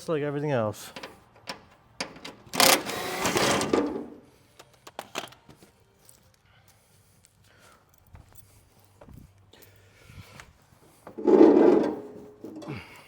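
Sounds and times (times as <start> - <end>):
cordless drill running: 2.6 - 3.7.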